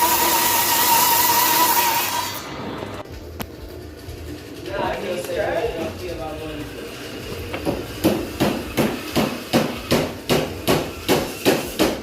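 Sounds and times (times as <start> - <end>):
hammer striking: 7.5 - 12.0.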